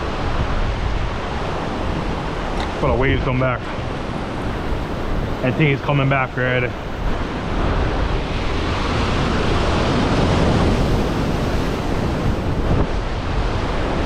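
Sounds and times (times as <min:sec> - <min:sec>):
surf breaking on shore: 0:00.0 - 0:14.0
wind buffeting microphone: 0:00.0 - 0:14.0.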